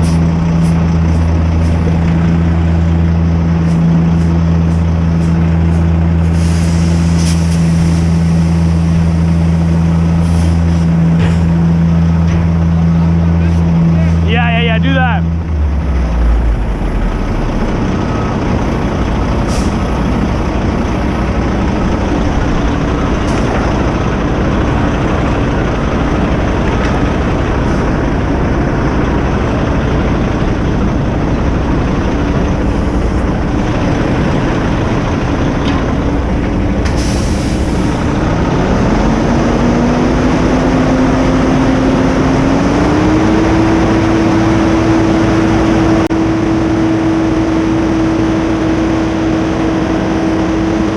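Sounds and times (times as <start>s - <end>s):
diesel truck engine revving: 0.0s - 50.9s
air hiss: 36.9s - 38.0s.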